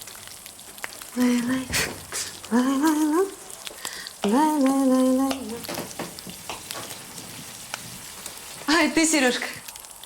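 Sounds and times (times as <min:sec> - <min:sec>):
steady hiss: 0:00.0 - 0:10.0
person vocalizing wordless notes: 0:01.2 - 0:03.5.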